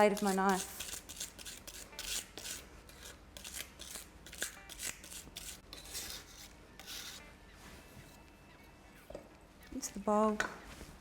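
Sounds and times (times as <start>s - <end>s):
knife scraping garlic on board: 0.0s - 7.3s.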